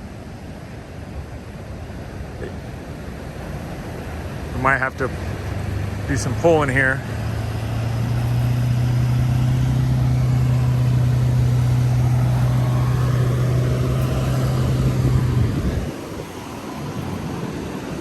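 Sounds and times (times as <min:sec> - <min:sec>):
diesel engine running under load: 0:03.4 - 0:18.0.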